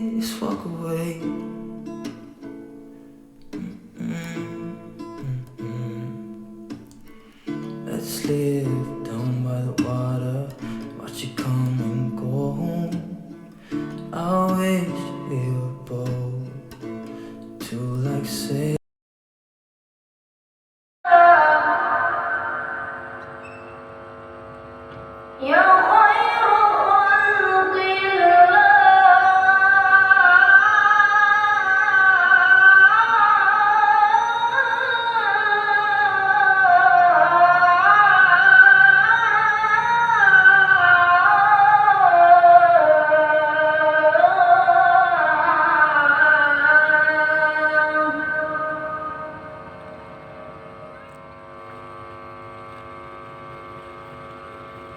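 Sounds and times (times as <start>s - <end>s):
slow song with sustained chords: 21.2s - 54.9s.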